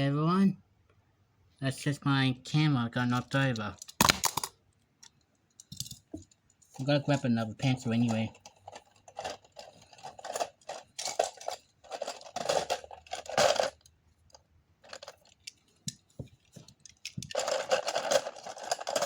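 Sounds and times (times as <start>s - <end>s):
hard objects scraping and clattering: 5.6s - 19.0s.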